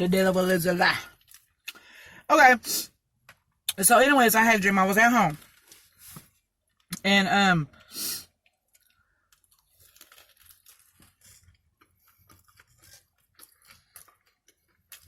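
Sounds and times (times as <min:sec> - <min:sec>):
chewing crunchy food: 0:00.2 - 0:02.0, 0:07.7 - 0:15.0.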